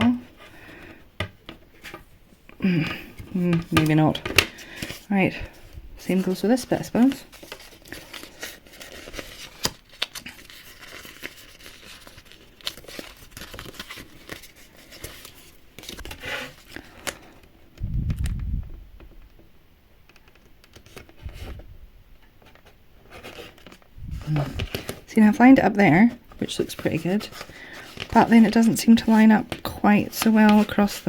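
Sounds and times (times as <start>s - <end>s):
paper crinkling and peeling: 3.4s - 17.3s, 26.3s - 31.0s.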